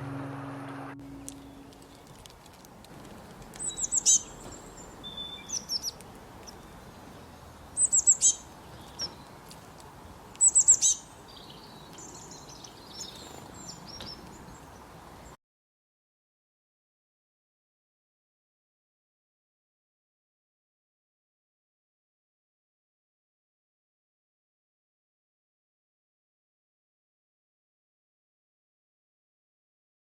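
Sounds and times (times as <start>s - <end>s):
songbird singing: 0.0s - 15.4s
soft bird chirps: 3.5s - 15.4s.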